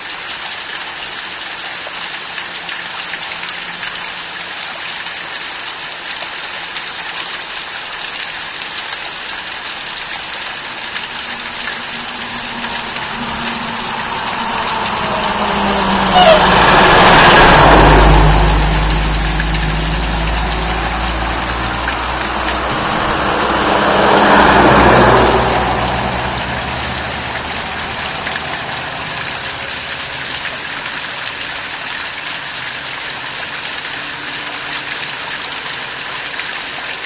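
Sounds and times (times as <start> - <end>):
waterfall rushing: 0.0 - 37.0
vehicles passing: 8.7 - 37.0.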